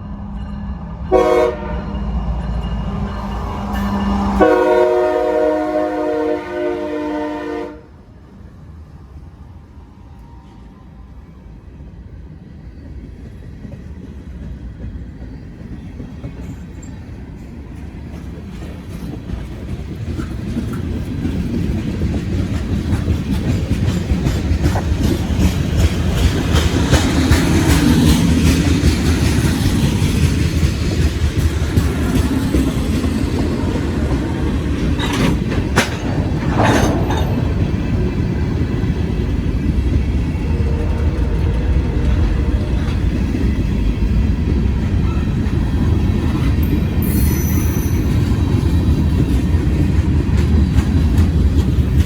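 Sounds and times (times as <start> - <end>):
train rumble and wheel clatter: 0.0 - 52.0
train horn: 1.0 - 2.2, 3.2 - 8.2.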